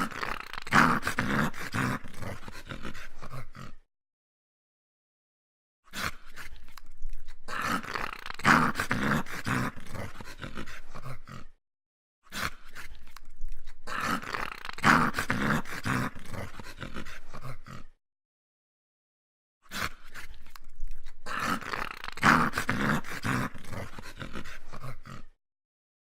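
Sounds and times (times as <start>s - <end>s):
dog growling: 0.0s - 3.9s, 7.1s - 11.6s, 13.6s - 18.0s, 19.7s - 25.4s.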